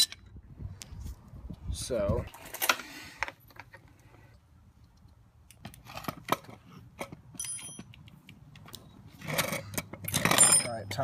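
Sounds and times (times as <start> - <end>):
metal objects clinking: 9.3 - 11.0.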